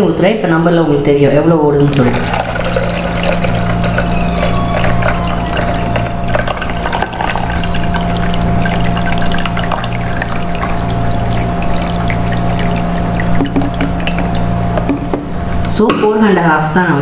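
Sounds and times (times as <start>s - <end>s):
low hum: 1.7s - 15.7s
water pouring from a jug: 1.8s - 15.1s.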